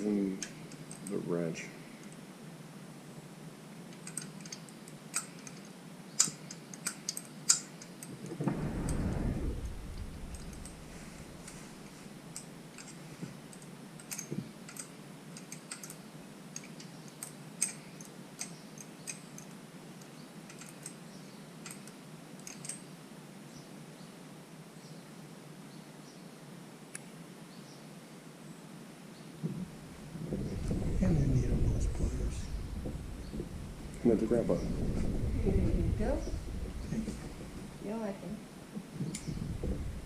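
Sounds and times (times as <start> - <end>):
wrench clicks and taps: 3.9 - 8.0, 12.4 - 16.0, 20.5 - 21.0
low rumble: 8.3 - 12.4, 29.4 - 40.0.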